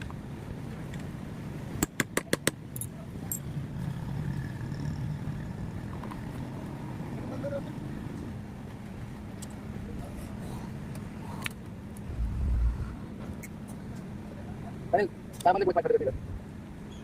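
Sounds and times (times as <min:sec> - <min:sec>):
low background rumble: 0:03.3 - 0:15.0.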